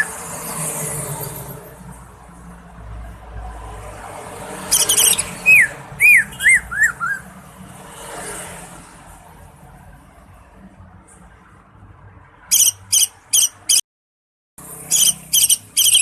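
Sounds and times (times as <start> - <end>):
bird chattering: 4.7 - 7.2, 12.5 - 13.8, 14.9 - 16.0.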